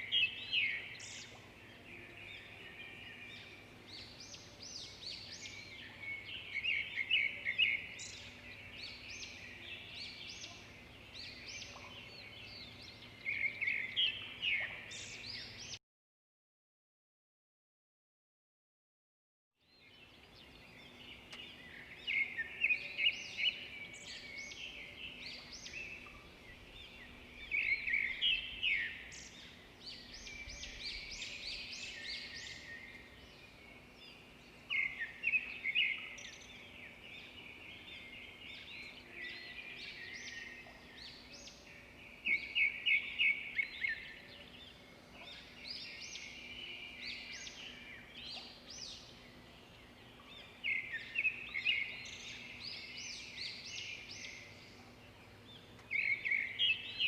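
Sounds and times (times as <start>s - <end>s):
songbirds chirping: 0.0s - 15.8s, 19.6s - 57.0s
faint steady hum: 20.0s - 57.0s.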